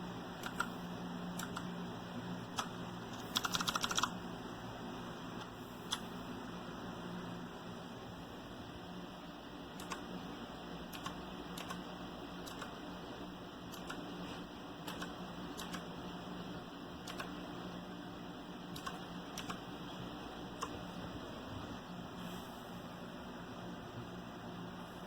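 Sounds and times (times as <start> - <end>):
steady low hum: 0.0 - 25.0
mechanical keyboard clicks: 0.4 - 0.7, 1.4 - 1.7, 2.6 - 4.1, 9.8 - 10.1, 10.9 - 11.8, 12.4 - 12.8, 13.7 - 14.0, 14.8 - 15.9, 17.0 - 17.4, 18.8 - 19.6.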